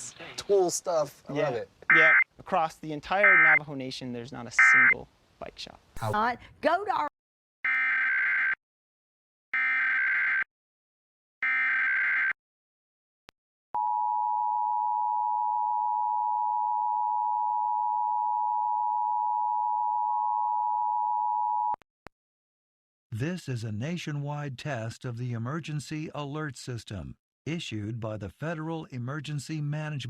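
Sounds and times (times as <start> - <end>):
digital data bursts: 3.3 - 3.6, 4.6 - 5.0
two-tone alert signal: 4.6 - 4.9.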